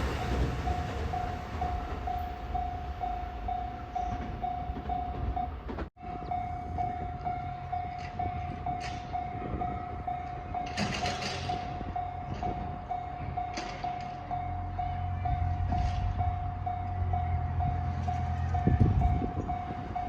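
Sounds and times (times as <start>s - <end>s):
level crossing warning bell: 0.0s - 20.0s
train passing rumble: 0.0s - 20.0s.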